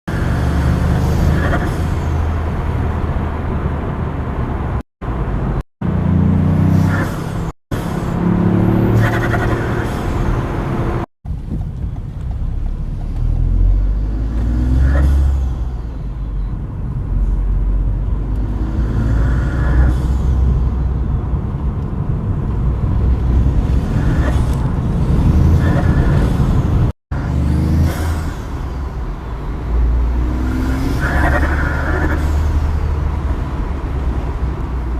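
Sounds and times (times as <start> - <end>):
car engine revving: 5.8 - 11.1, 21.8 - 34.9.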